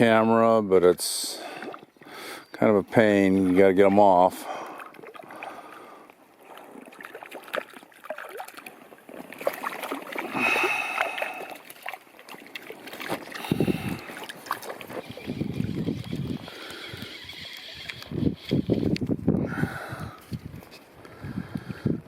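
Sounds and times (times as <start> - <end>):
water splashing from thrashing fish: 4.4 - 17.9.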